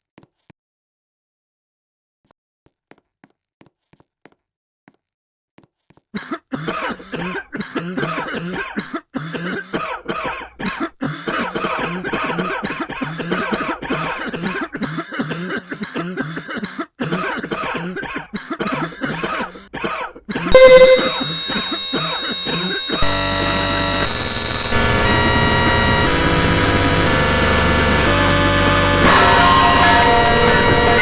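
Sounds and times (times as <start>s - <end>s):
person coughing: 6.2s - 19.4s
throat clearing: 6.2s - 20.1s.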